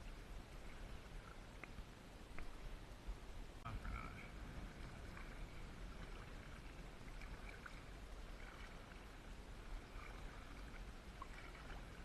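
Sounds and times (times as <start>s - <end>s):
paddle dipping in water: 0.0s - 2.8s, 4.2s - 12.0s
water dripping and trickling: 4.7s - 12.0s.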